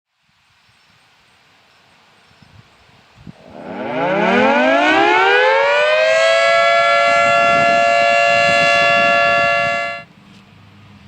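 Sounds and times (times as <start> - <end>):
warning siren winding up: 3.4 - 10.1.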